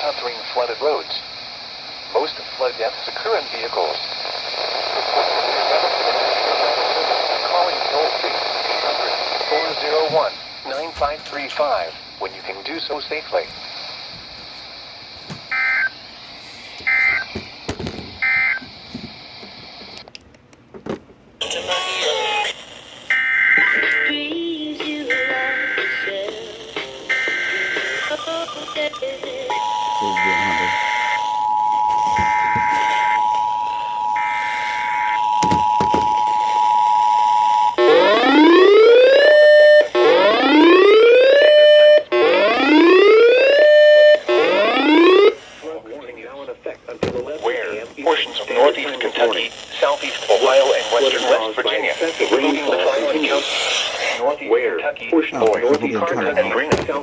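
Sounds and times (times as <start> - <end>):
static hiss: 0.0 - 17.9, 21.4 - 35.2, 44.1 - 57.0
two-tone attention signal: 27.1 - 38.8.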